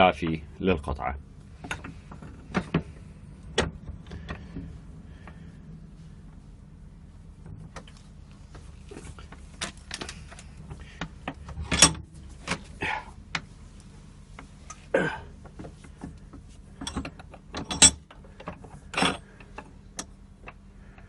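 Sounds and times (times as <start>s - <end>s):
steady low hum: 0.0s - 21.0s
metal clinks and knocks: 9.6s - 12.6s, 16.7s - 20.2s.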